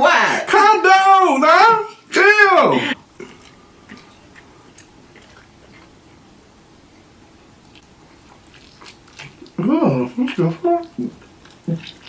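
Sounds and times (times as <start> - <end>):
chewing and wet mouth clicks: 3.3 - 6.6, 7.6 - 12.0.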